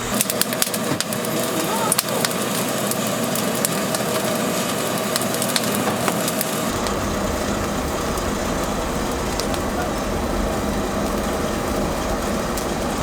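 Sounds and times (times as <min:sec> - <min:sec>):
steady hiss: 0:00.0 - 0:13.0
wood crackling and snapping: 0:00.0 - 0:13.0
low rumble: 0:06.6 - 0:13.0.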